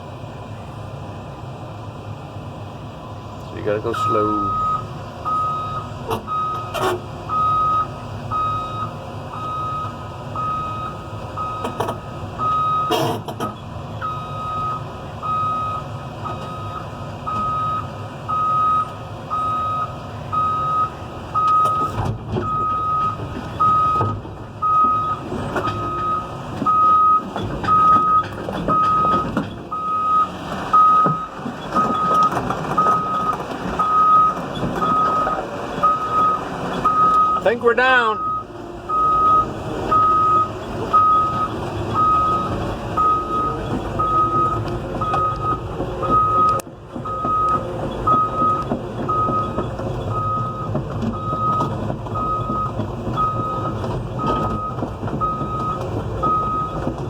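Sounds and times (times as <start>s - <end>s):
diesel engine running: 0.0s - 57.0s
excavator travel alarm beeping: 3.8s - 57.0s
tracks and steel clanking: 21.4s - 57.0s.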